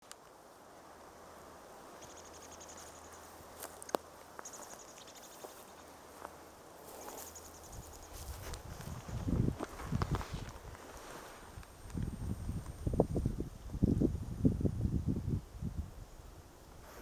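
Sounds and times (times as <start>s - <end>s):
bird alarm call rattle: 2.0s - 3.2s, 4.4s - 5.9s, 7.3s - 8.1s.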